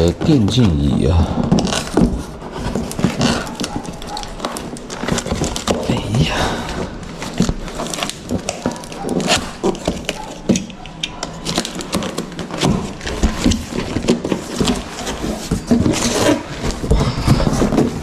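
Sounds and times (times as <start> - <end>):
plastic parts clicking and knocking: 7.1 - 18.0.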